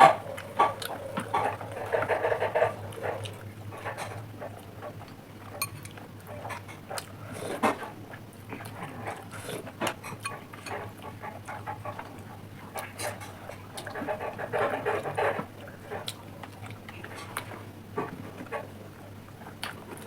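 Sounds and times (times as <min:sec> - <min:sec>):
low hum: 0:00.0 - 0:04.6
chewing: 0:00.0 - 0:07.9.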